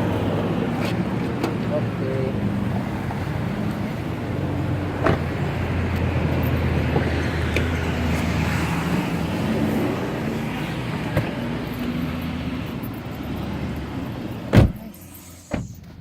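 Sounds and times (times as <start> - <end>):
vehicle engine and road noise: 0.0 - 16.0.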